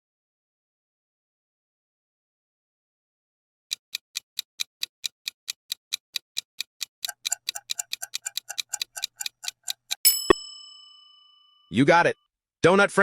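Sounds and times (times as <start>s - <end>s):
clock ticking: 3.7s - 10.4s.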